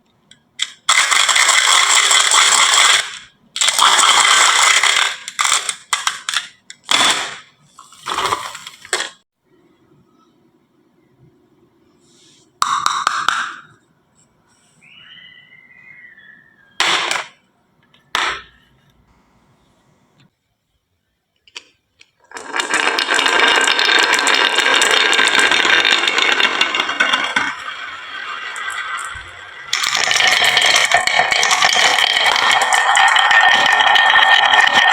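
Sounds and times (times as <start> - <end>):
marbles rattling down wooden track: 0.9 - 7.4, 22.3 - 34.9
marbles knocking and clacking: 22.3 - 34.9.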